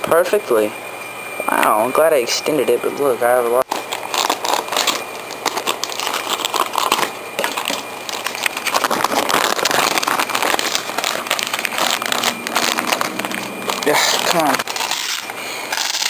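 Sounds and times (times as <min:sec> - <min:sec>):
crinkling and rustling handling noise: 0:03.6 - 0:16.0.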